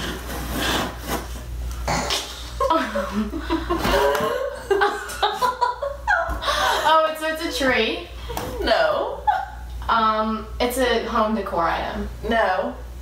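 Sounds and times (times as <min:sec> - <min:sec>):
young women laughing: 0:02.4 - 0:07.1, 0:08.3 - 0:09.7.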